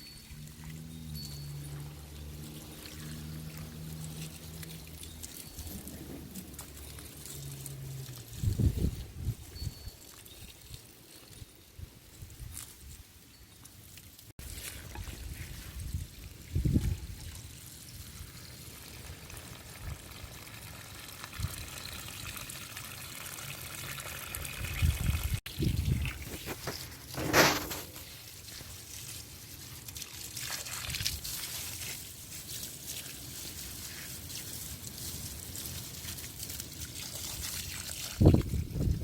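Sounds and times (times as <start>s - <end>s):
water trickling and pouring: 0.0s - 39.0s
sharp clatter: 26.3s - 28.1s.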